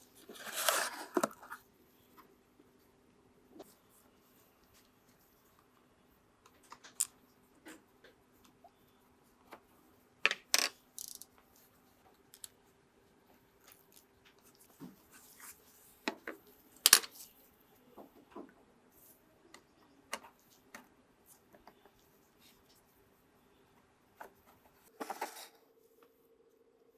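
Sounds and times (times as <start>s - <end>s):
small hard parts clicking: 10.6s - 11.3s.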